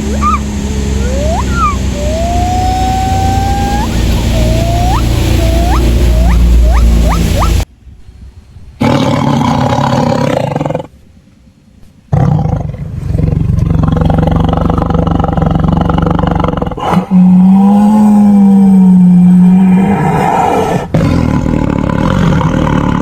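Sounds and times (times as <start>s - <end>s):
loud low animal calls: 0.0s - 7.7s.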